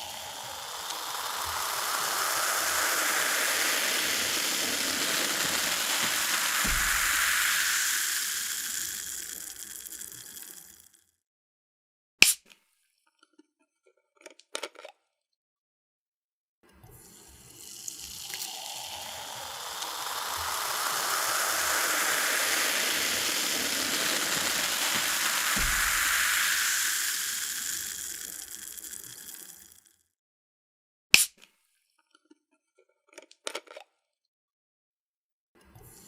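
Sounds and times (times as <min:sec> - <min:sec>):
cola pouring and fizzing: 0:00.0 - 0:11.0, 0:17.0 - 0:29.9.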